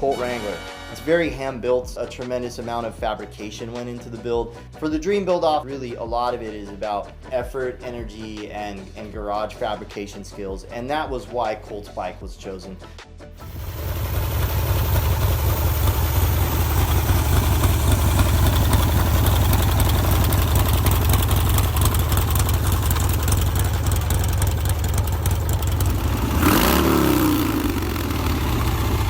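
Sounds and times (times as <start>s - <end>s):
motorcycle engine idling: 13.4s - 29.0s.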